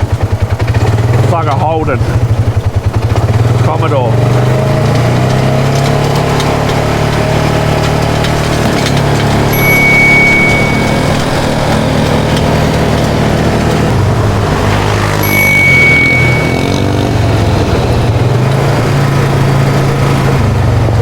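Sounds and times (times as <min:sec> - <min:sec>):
vehicle engine running: 0:00.0 - 0:21.0
thin high tone: 0:09.4 - 0:13.9, 0:14.6 - 0:18.4.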